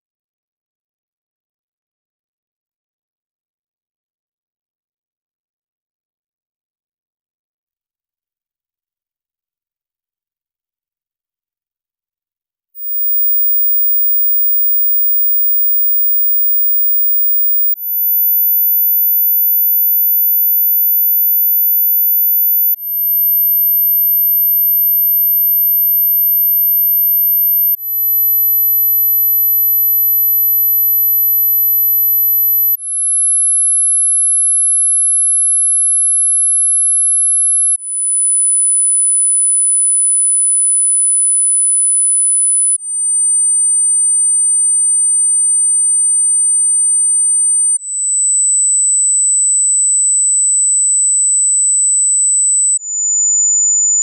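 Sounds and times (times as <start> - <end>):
high-pitched sine tone: 12.8 - 54.0.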